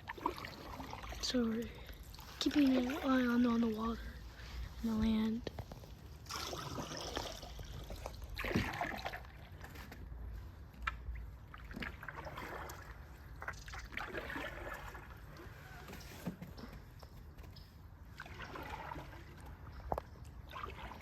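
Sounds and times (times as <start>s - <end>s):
paddles splashing in water: 0.0s - 4.8s, 5.9s - 17.3s, 17.9s - 21.0s
water trickling: 0.0s - 10.2s.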